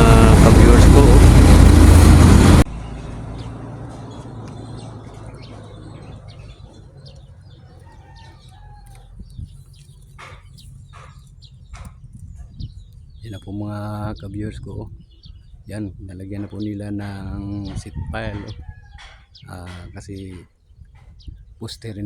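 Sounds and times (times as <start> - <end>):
low steady hum: 0.0 - 5.4
bird calls and chirps: 2.7 - 22.0.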